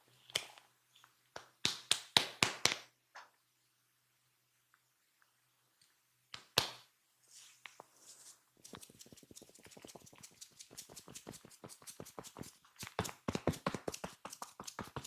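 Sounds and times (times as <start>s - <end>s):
hands tapping on body: 10.8s - 15.0s.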